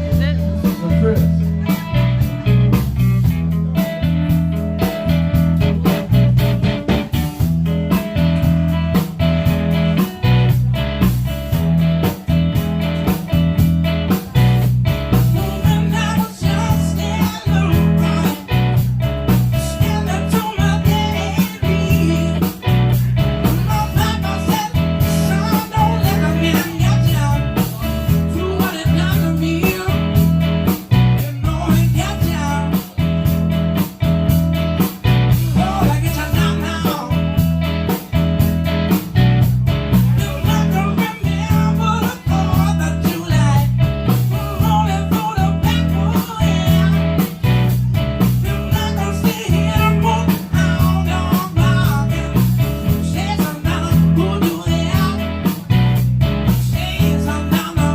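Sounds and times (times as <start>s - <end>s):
live blues-rock band: 0.0s - 57.9s
person singing: 14.1s - 33.1s, 35.1s - 37.4s, 39.9s - 55.7s, 56.5s - 57.9s.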